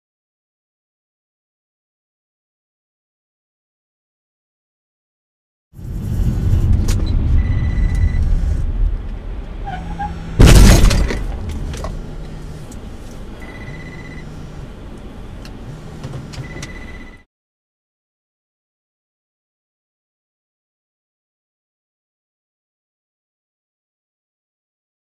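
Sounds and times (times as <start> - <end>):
road noise inside car: 5.8 - 17.2
short electronic beep: 7.0 - 8.5, 13.4 - 14.3, 16.4 - 17.3
loud collision crash: 10.0 - 11.6.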